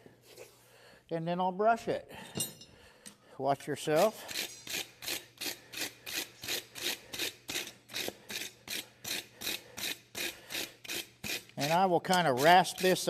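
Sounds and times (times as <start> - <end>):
brush scrubbing steel horseshoe: 3.8 - 13.0.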